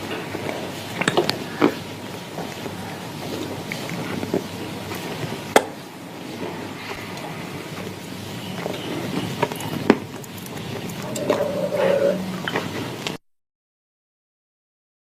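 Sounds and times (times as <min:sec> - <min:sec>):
crunchy chewing: 0:08.4 - 0:13.2.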